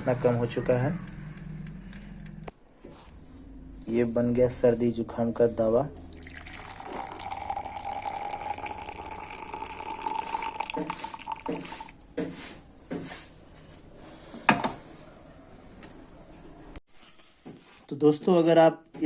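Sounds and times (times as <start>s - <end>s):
liquid pouring into a cup: 6.0s - 12.0s.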